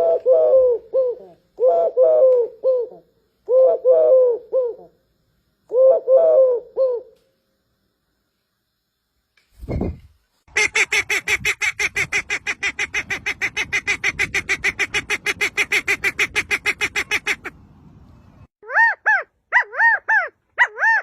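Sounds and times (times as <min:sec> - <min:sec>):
bird rising and falling cries: 0:18.6 - 0:21.0.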